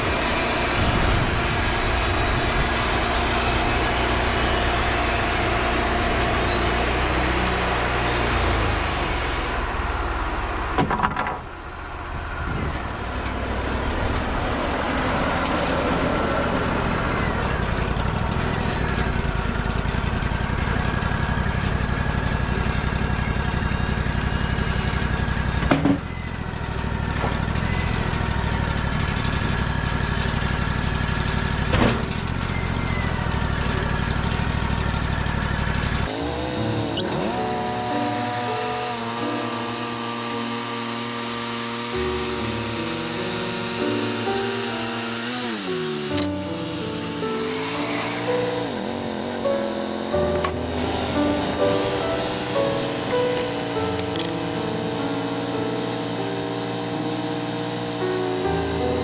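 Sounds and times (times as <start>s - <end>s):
band sawmill cutting timber: 0.0s - 59.0s.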